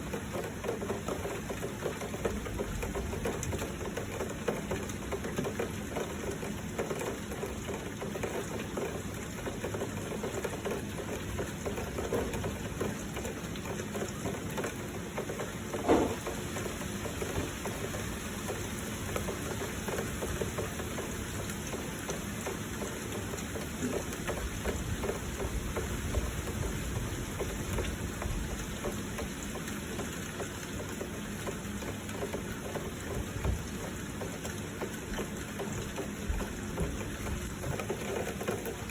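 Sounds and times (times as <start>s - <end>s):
flowing water: 0.0s - 38.9s
heavy rain falling: 0.0s - 38.9s
brief knock: 15.8s - 16.4s.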